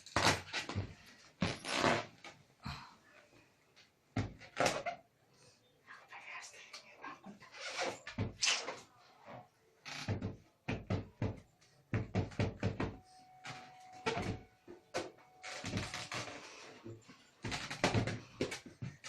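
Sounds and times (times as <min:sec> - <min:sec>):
knocking and banging: 0:10.1 - 0:13.0, 0:17.4 - 0:19.0.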